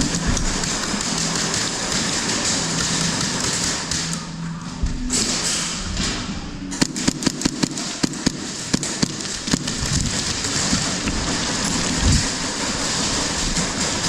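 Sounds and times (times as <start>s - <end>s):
airsoft gun shots: 6.7s - 11.4s.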